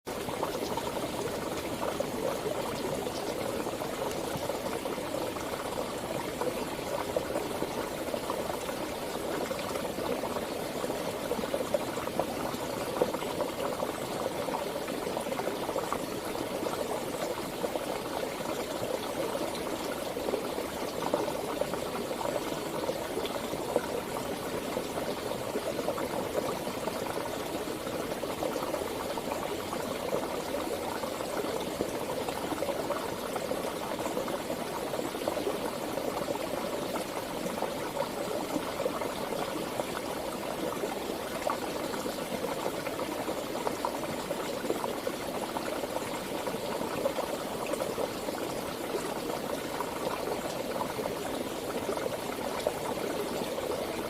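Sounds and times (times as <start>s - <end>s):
stream water rushing and gurgling: 0.1s - 54.0s.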